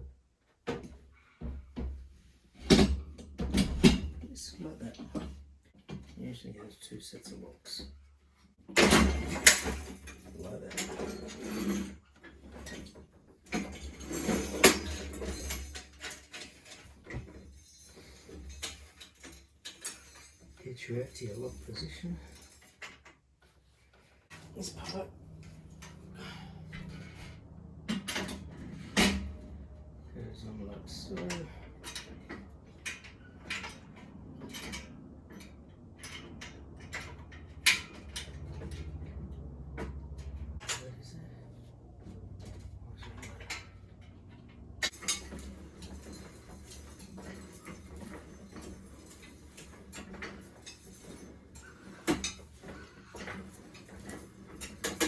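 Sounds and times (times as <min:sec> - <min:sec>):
metal parts knocking and rattling: 0:08.7 - 0:23.2, 0:31.0 - 0:40.9, 0:41.9 - 0:55.0
metal parts clicking and knocking: 0:42.4 - 0:55.0.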